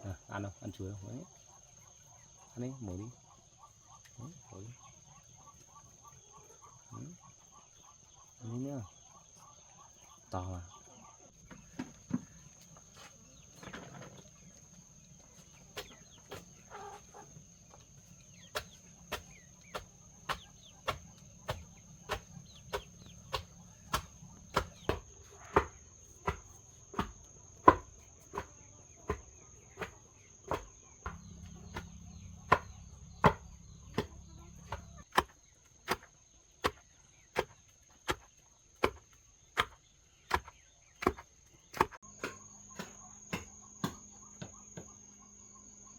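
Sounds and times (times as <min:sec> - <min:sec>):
cricket trilling: 0:00.0 - 0:45.9
hen clucking: 0:01.0 - 0:27.8, 0:28.4 - 0:35.2
chopping on wood: 0:15.7 - 0:16.5, 0:18.5 - 0:44.9.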